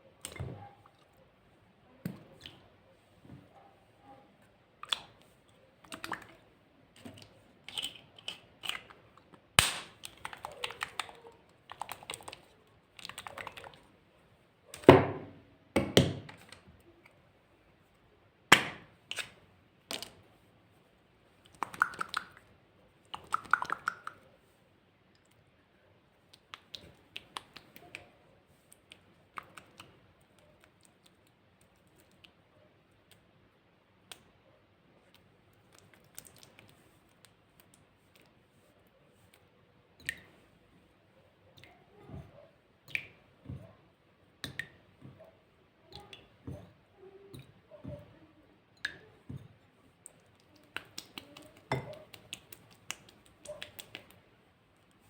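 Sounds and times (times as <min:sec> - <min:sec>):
slime snapping: 0:09.6 - 0:10.8
slime clicking and popping: 0:09.6 - 0:11.1, 0:21.5 - 0:22.4.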